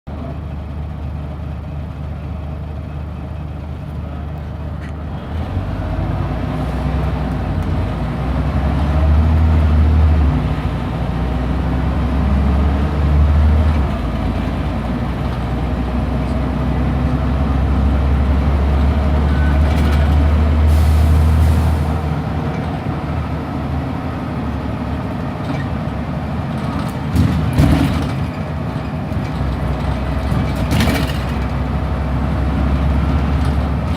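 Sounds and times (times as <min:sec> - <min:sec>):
bus diesel engine drone: 0:00.1 - 0:33.9.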